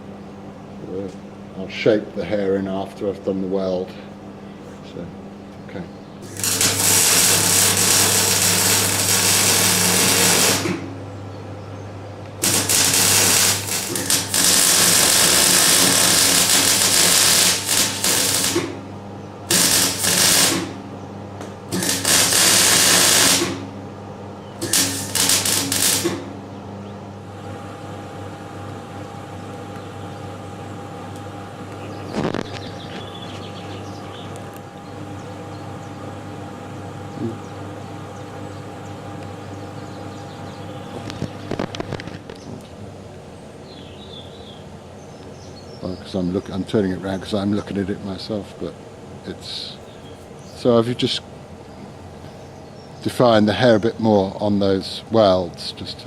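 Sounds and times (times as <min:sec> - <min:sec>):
steady electric hum: 0:00.0 - 0:56.0
arc welding crackling hiss: 0:06.2 - 0:11.0, 0:12.4 - 0:20.9, 0:21.7 - 0:23.8, 0:24.6 - 0:26.4.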